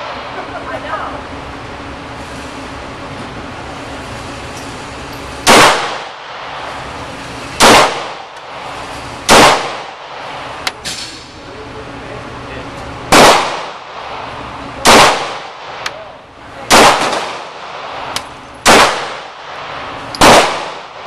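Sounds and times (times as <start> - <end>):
pistol shots: 5.4 - 6.7, 7.6 - 8.6, 9.3 - 10.4, 13.1 - 14.2, 14.8 - 16.0, 16.7 - 21.0.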